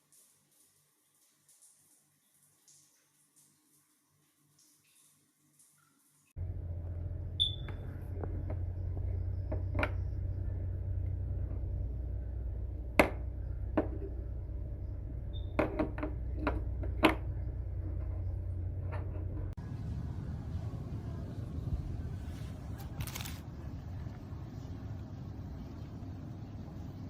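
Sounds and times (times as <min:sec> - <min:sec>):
steady low hum: 0:06.4 - 0:27.0.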